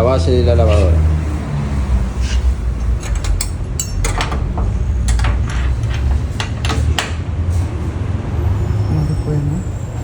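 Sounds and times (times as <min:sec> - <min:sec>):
wrench clicking on metal bolts: 0:02.2 - 0:07.1.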